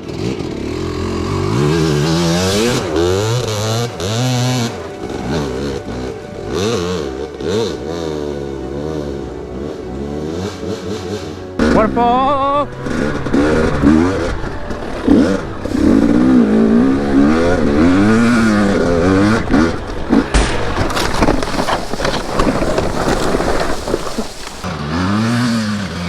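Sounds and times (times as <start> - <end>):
dirt bike engine revving: 0.0 - 26.0
clattering and scraping: 12.7 - 24.7.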